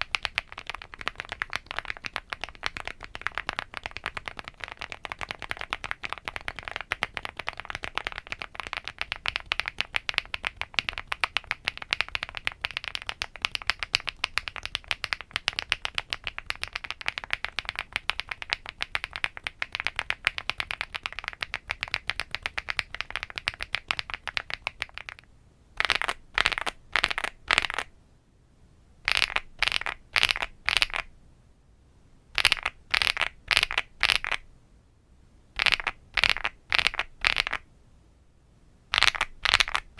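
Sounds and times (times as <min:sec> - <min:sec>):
mechanical keyboard typing: 0:00.0 - 0:25.1.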